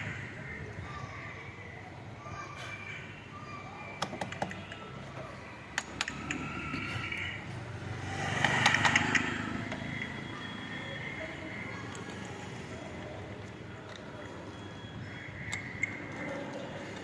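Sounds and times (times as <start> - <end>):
broad rush of noise: 0.0 - 17.0
sharp metallic clicks and taps: 4.0 - 4.9, 5.7 - 7.3, 8.3 - 10.2, 15.4 - 17.0.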